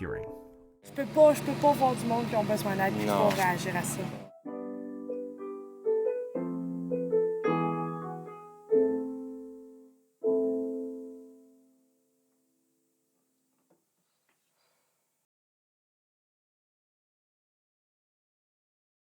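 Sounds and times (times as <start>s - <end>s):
slow piano chords: 3.0s - 12.0s.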